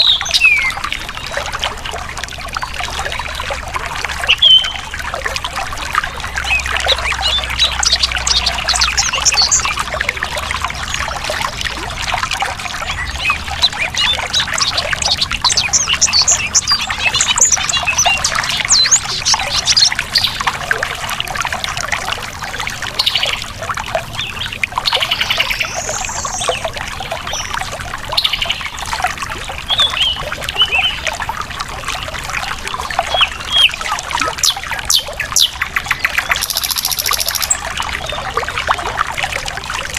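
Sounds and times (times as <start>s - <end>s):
water babbling over rocks: 0.0s - 39.9s
birds chirping: 4.3s - 4.9s, 6.3s - 9.9s, 12.8s - 20.4s, 34.4s - 38.2s.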